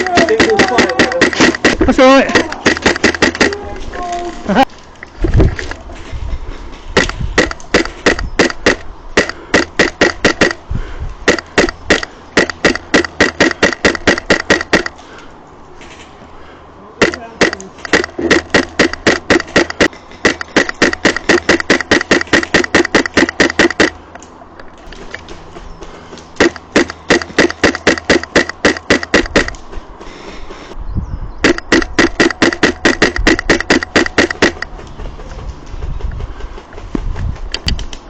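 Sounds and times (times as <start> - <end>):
airsoft rifle rapid shots: 0.0 - 3.6, 7.0 - 10.6, 11.3 - 15.0, 17.0 - 24.0, 26.4 - 29.6, 31.4 - 34.7.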